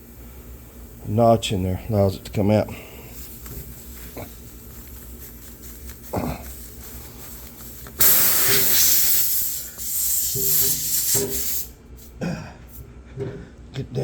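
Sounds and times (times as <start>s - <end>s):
air hissing from punctured tire: 2.8s - 12.2s.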